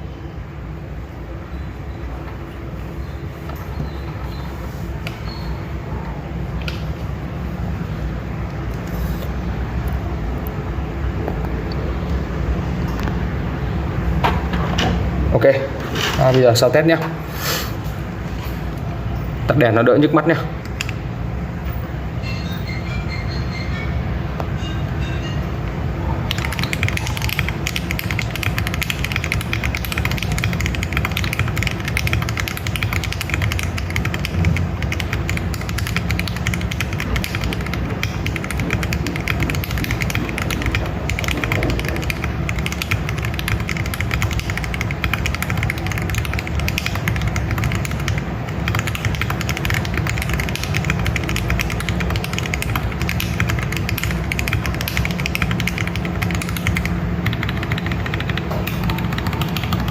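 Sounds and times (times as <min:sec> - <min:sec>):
fast mechanical keyboard typing: 0:26.3 - 0:59.9.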